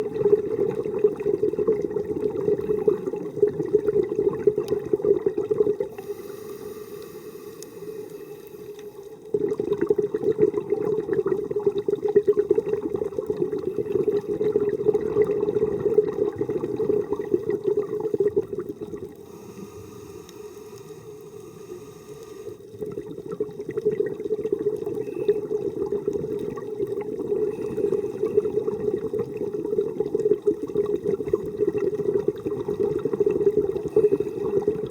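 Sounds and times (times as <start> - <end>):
regulator inhale hiss: 5.9 - 9.2, 19.2 - 22.7.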